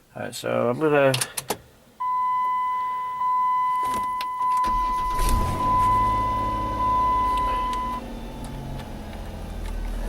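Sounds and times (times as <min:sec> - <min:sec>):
high electronic warning tone: 0:02.0 - 0:08.1
engine cranking and idling: 0:04.6 - 0:10.0.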